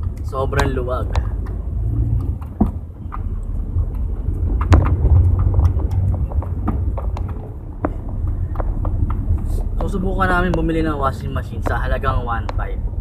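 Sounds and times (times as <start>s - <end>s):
car interior rumble: 0.0s - 13.0s
sharp knocks: 0.6s - 10.8s.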